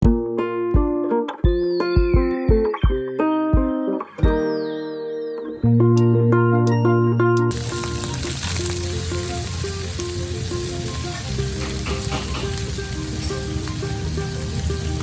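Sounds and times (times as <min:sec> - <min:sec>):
light background melody: 0:00.0 - 0:15.0
food sizzling in a pan: 0:07.5 - 0:15.0.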